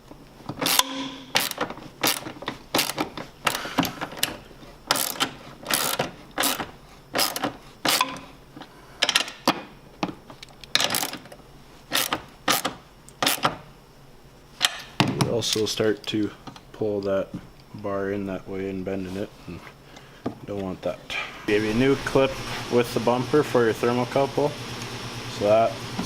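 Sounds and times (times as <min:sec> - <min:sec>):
ratchet wrench clicking: 0:00.6 - 0:03.6, 0:04.2 - 0:08.2, 0:11.9 - 0:13.5.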